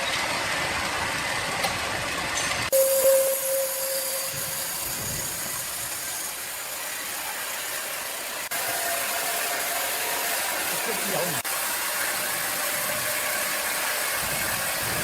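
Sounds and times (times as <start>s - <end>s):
machine noise with hiss: 0.0s - 15.0s.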